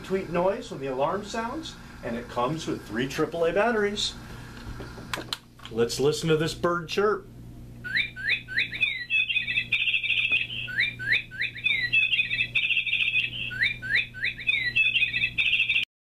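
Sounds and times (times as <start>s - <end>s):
bird-chirp alarm clock: 7.8s - 15.9s.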